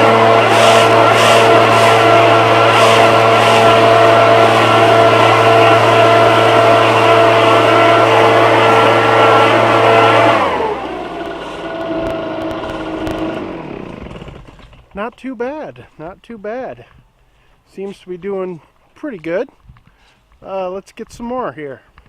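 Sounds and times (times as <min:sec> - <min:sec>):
leaf blower engine running: 0:00.0 - 0:15.9.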